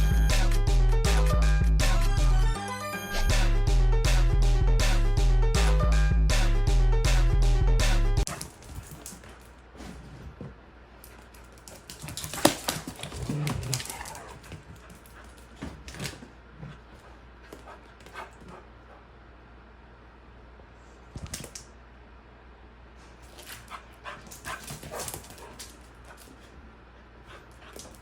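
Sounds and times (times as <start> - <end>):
dog scuffling and clicking: 8.3 - 18.7, 23.2 - 26.5, 27.3 - 28.0.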